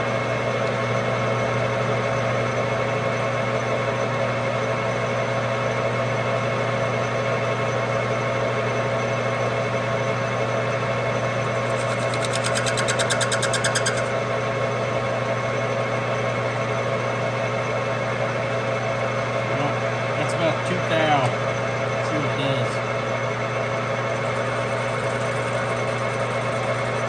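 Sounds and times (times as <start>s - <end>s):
metal lathe humming: 10.6s - 14.2s, 23.7s - 27.0s
rapid even ticking: 11.5s - 14.1s.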